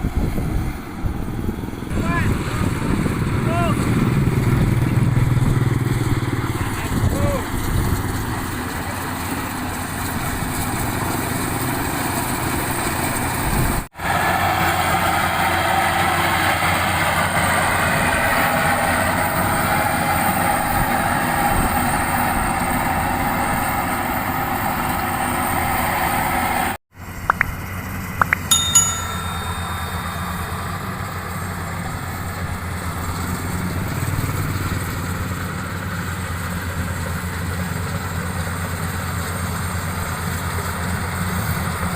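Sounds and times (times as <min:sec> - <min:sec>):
sharp clinks: 0:28.2 - 0:31.0.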